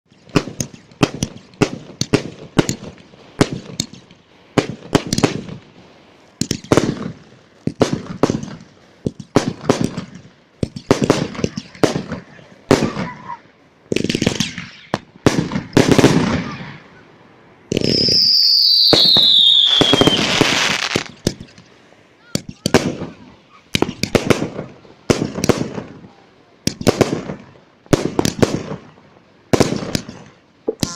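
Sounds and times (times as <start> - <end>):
fireworks bangs with crackle: 0.1 - 16.9, 17.7 - 30.9
firework hissing and falling whistle: 14.2 - 15.1, 17.7 - 21.2.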